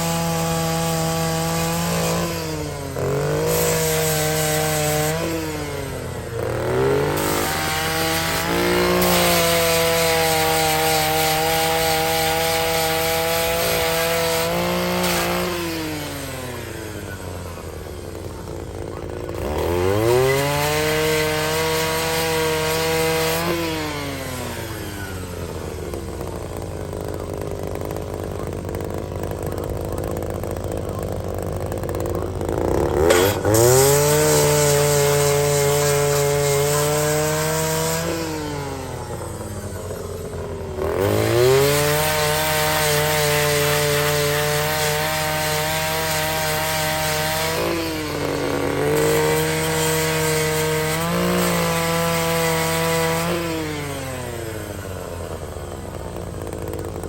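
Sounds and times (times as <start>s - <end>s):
grinder sharpening steel: 7.2s - 15.3s.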